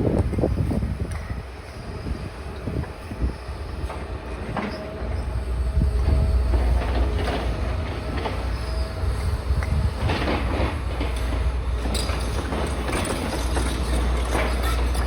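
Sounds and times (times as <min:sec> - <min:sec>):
diesel excavator engine rumbling: 0:00.0 - 0:15.0
metallic squeals: 0:08.4 - 0:09.5, 0:13.4 - 0:15.0.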